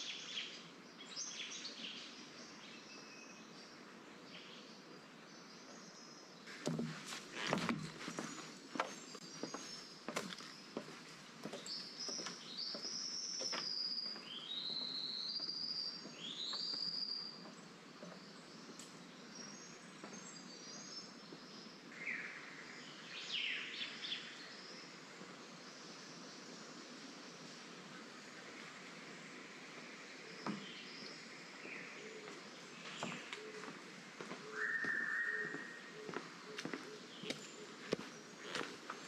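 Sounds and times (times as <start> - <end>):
bird whistled notes: 34.5 - 35.8.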